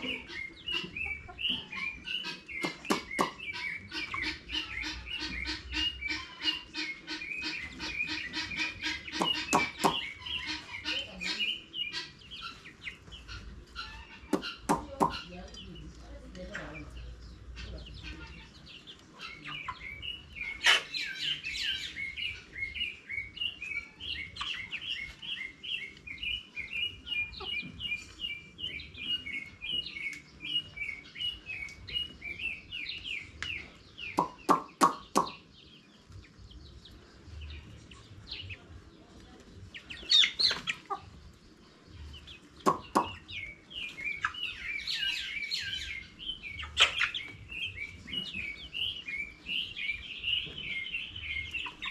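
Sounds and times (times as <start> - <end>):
chicks peeping: 0.0 - 51.9.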